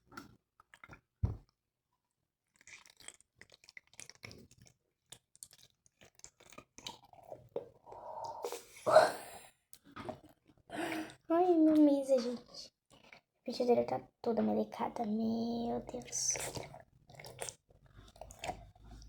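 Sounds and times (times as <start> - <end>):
sticky crackling and squelching: 14.9 - 19.0.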